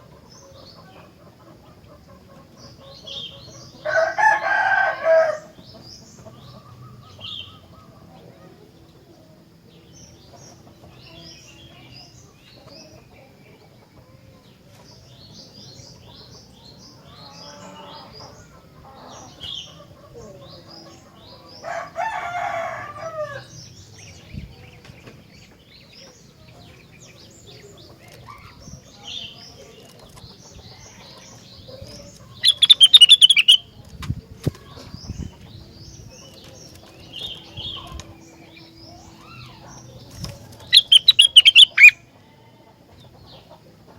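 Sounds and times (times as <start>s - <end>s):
bird chirping: 0.0s - 42.1s
bird trilling: 32.4s - 33.7s, 40.6s - 42.0s.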